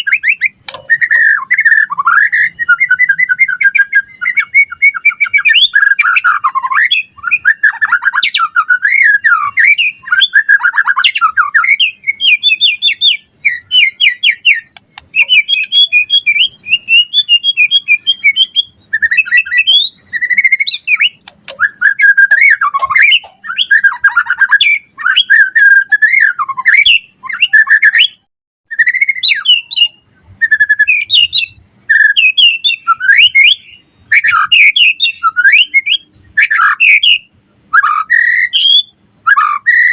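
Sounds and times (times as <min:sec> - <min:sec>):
bird singing whistled song: 0:00.0 - 0:39.9.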